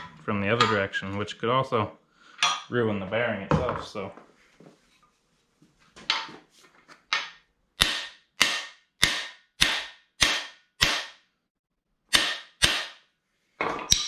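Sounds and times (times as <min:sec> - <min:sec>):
hammer striking metal bar: 0:07.2 - 0:11.3, 0:12.1 - 0:13.1, 0:13.8 - 0:14.0.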